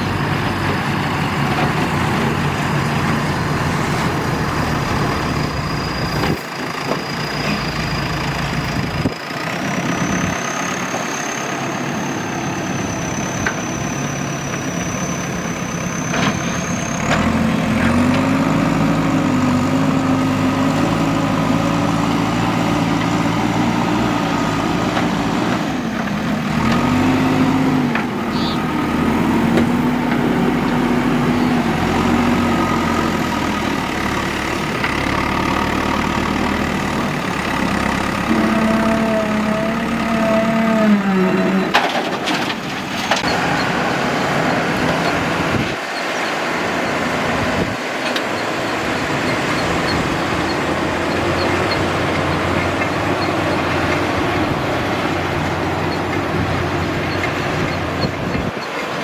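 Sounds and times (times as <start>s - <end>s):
diesel engines running: 0.0s - 59.0s.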